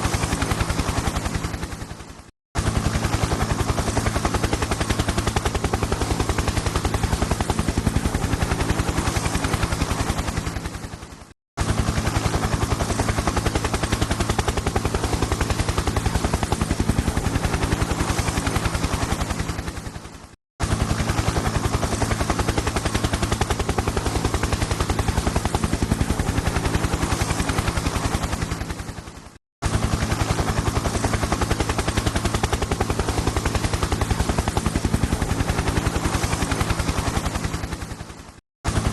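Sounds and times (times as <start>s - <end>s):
helicopter rotor chopping: 0.0s - 38.9s.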